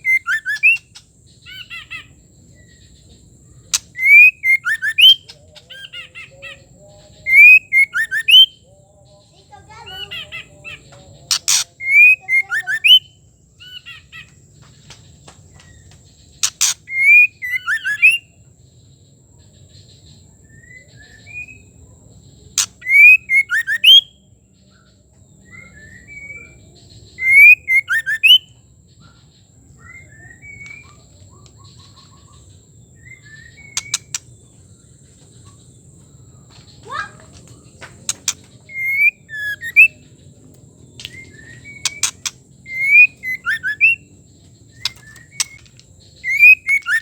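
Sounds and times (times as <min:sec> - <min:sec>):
bird calling with clicks and whistles: 0:00.0 - 0:02.1, 0:03.7 - 0:06.3, 0:07.2 - 0:08.6, 0:10.8 - 0:13.1, 0:13.7 - 0:18.3, 0:22.6 - 0:24.1, 0:27.2 - 0:28.6, 0:29.8 - 0:34.3, 0:36.5 - 0:47.0.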